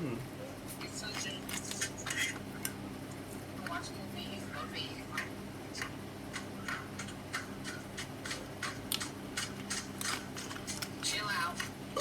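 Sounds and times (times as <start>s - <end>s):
mouth chewing and smacking: 5.8s - 12.0s.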